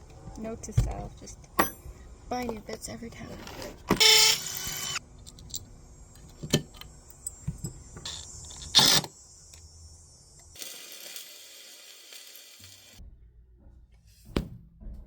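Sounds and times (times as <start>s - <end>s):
drill motor whirring: 3.9s - 5.0s, 7.2s - 13.0s
metal tools clicking and knocking: 4.0s - 9.1s.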